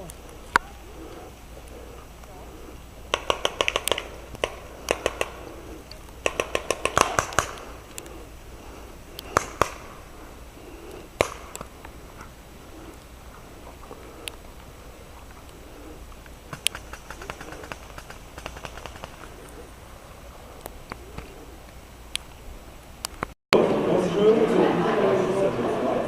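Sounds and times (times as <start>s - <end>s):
paintball markers firing: 3.1s - 8.2s, 9.2s - 9.9s, 10.9s - 11.7s.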